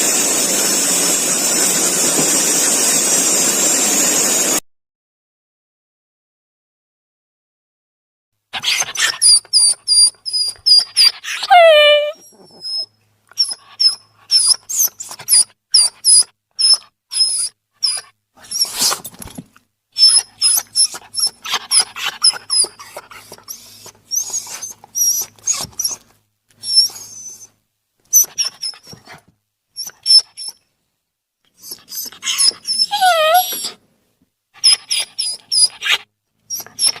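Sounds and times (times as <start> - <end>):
high-pitched animal squeaks: 8.6 - 19.0, 20.0 - 26.0, 26.6 - 27.5, 28.1 - 29.0, 29.8 - 30.6, 31.6 - 33.8, 34.6 - 37.0.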